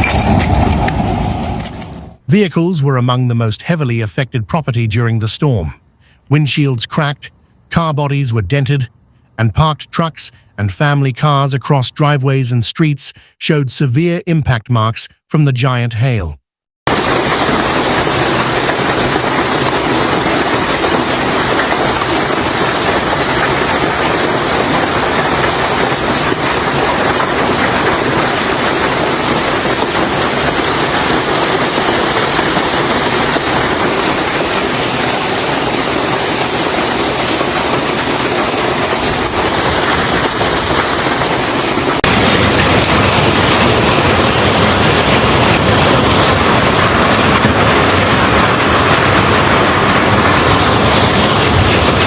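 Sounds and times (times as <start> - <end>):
hailstones pelting down: 0.0 - 2.2, 16.9 - 52.0.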